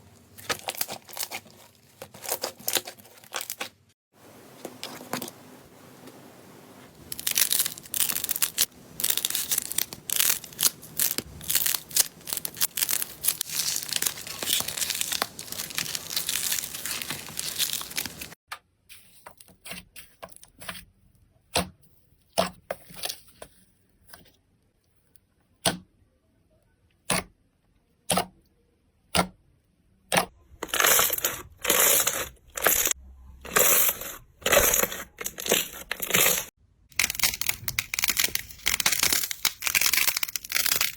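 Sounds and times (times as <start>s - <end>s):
slime squishing: 0.2s - 3.9s, 7.0s - 18.4s, 30.5s - 40.9s
slime crackling: 7.0s - 18.4s, 30.6s - 40.9s.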